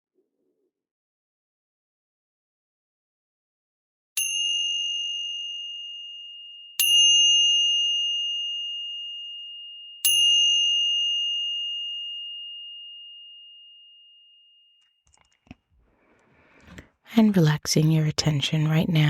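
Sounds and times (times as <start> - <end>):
meditation bell ringing: 4.2 - 15.0.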